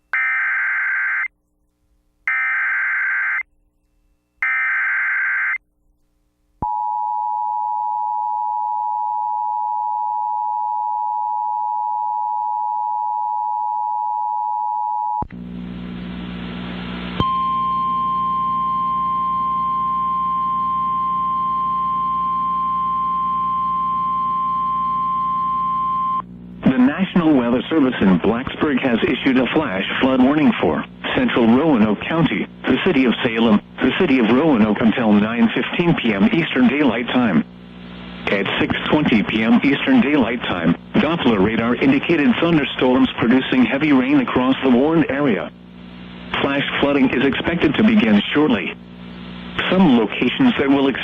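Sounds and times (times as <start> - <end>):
radio hiss and hum: 15.2 - 51.0.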